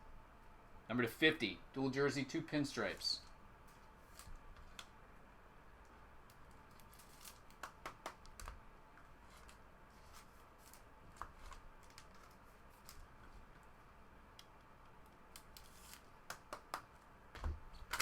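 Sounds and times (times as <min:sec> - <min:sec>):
trading cards and packaging rustling: 0:02.8 - 0:04.9, 0:06.4 - 0:13.7, 0:15.4 - 0:16.1.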